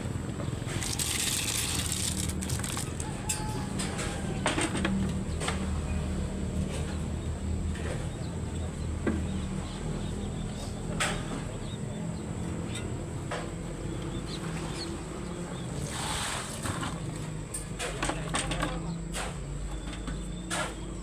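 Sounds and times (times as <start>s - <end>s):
low engine hum: 0.0s - 21.0s.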